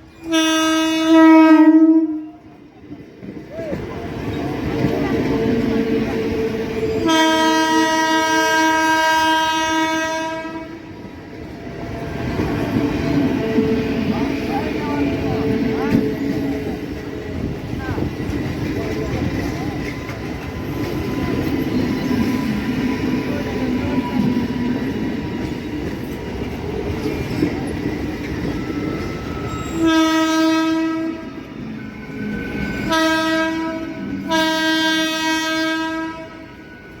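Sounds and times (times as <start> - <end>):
train rumbling on track: 0.0 - 37.0
train horn blast: 0.2 - 2.4, 6.4 - 11.0, 29.6 - 31.4, 32.8 - 36.6.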